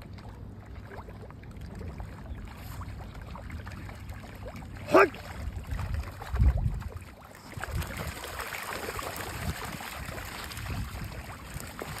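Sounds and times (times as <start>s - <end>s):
water splashing and trickling: 0.0s - 12.0s.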